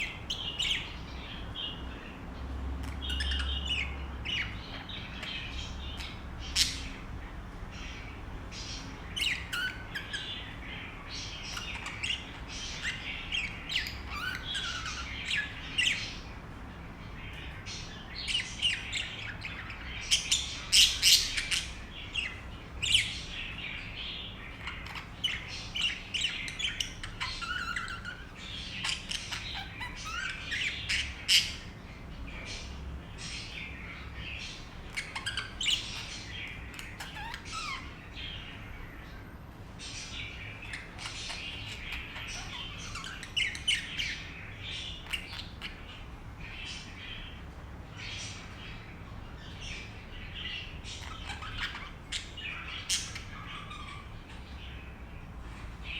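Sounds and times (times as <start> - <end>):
budgerigar chirping: 0.0 - 2.2, 2.8 - 7.1, 7.7 - 16.4, 17.3 - 31.8, 32.4 - 39.0, 39.8 - 47.4, 49.4 - 55.0.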